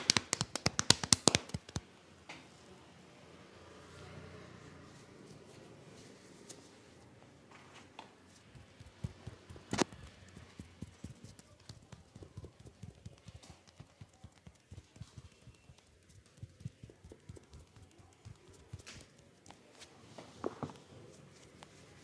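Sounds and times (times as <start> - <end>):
hands patting on body: 0.0 - 1.8, 8.3 - 19.9
sharp hand smack: 0.0 - 1.8.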